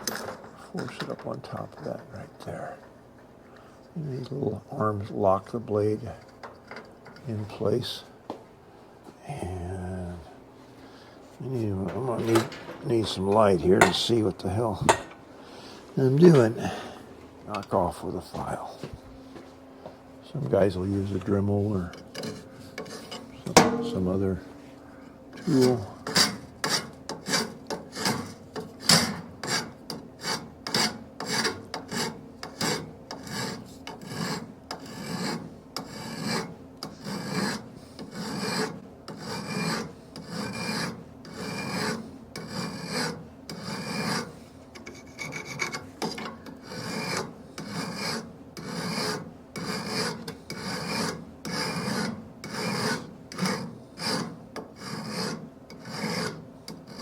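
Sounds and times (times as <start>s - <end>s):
hand file rasping on steel: 11.9s - 14.2s, 14.8s - 15.2s, 22.0s - 24.3s, 25.4s - 57.0s.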